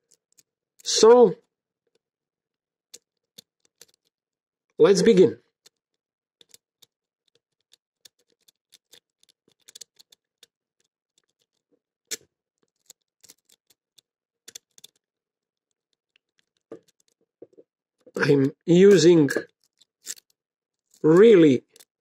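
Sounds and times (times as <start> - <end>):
lock pick clicking and scraping: 0.0 - 0.9, 2.9 - 4.2, 5.5 - 18.2, 19.4 - 21.0.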